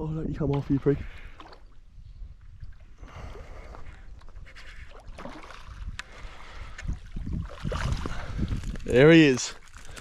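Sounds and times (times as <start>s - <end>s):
fish thrashing in water: 4.9s - 6.0s, 6.9s - 8.9s.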